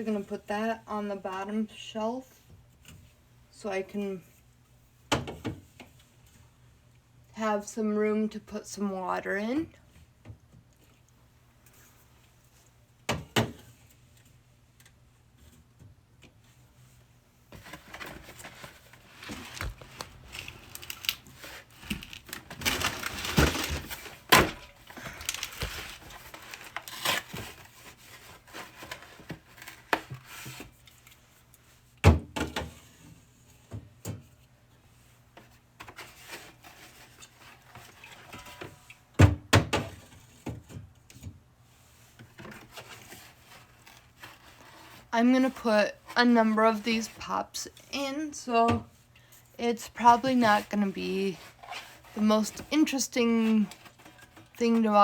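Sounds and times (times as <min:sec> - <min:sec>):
plastic packaging rustling: 0:17.5 - 0:31.3, 0:42.3 - 0:46.1, 0:49.9 - 0:55.0.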